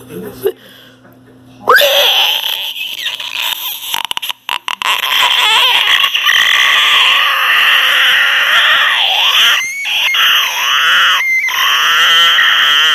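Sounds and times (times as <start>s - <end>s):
person screeching: 1.7s - 12.9s.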